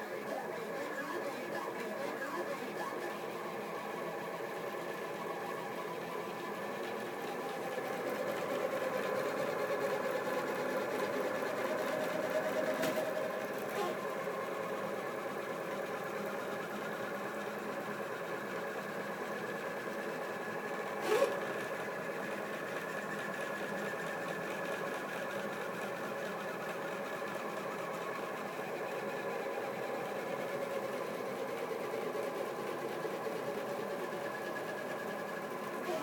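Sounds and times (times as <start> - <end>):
stepper motors whining: 21.0 - 21.7, 35.8 - 36.0.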